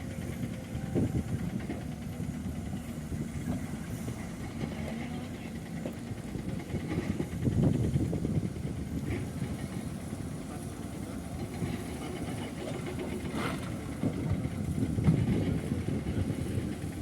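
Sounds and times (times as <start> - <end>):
heavy diesel engine rumbling: 0.0 - 17.0.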